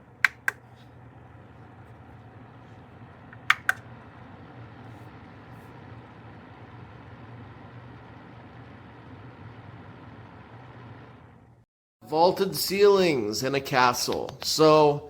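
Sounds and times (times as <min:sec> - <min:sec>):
heater fan running: 0:00.0 - 0:15.0
sharp clicks: 0:00.2 - 0:00.6.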